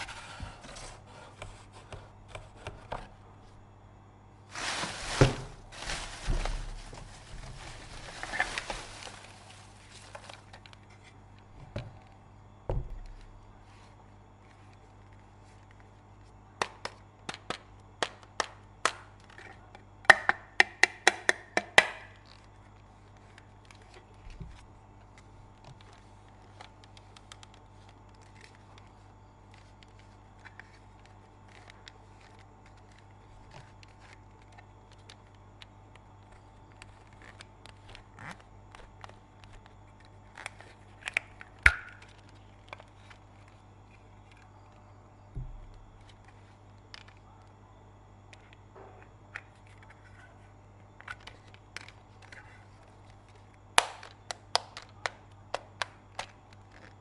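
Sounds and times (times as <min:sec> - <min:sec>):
faint steady hum: 0:00.0 - 0:57.0.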